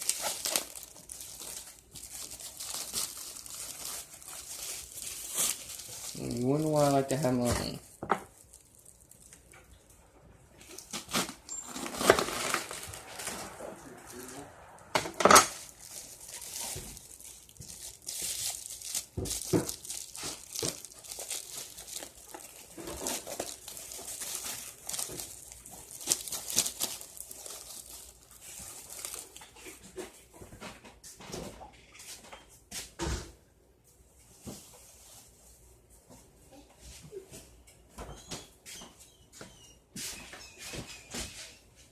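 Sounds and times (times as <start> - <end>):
plastic packaging crinkling: 0.0 - 10.0, 10.6 - 29.9.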